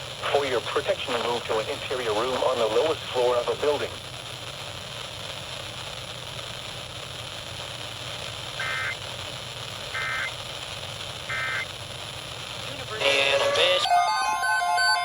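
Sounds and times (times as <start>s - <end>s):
radio receiver hiss: 0.0s - 14.0s
short data bursts: 8.6s - 9.0s, 9.9s - 10.4s, 11.3s - 11.7s, 12.7s - 15.0s.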